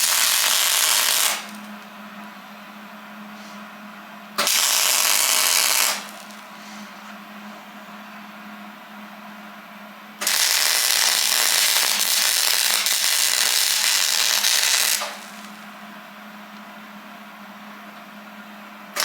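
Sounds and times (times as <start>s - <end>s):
welding arc crackling: 0.0s - 1.7s, 4.4s - 6.4s, 10.2s - 15.6s.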